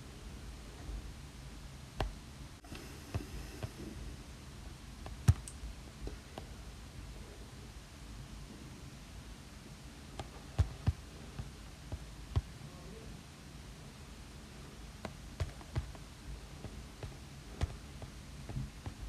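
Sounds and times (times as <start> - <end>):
faint low hum: 0.0 - 19.0.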